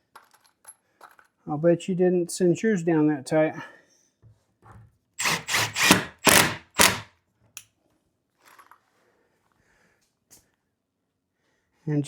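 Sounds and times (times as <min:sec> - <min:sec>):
drill driving into particle board: 0:05.2 - 0:07.1.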